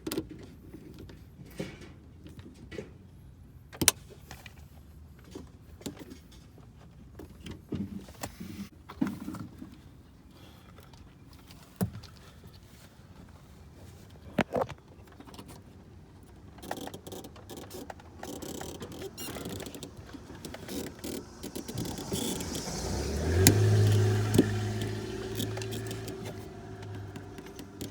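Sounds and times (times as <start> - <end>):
tools clicking and knocking: 16.6 - 21.8.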